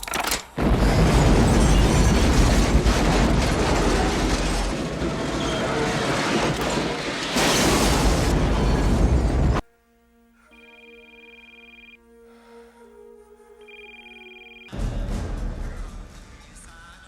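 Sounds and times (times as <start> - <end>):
mechanical rumbling and rattling: 0.0 - 9.6.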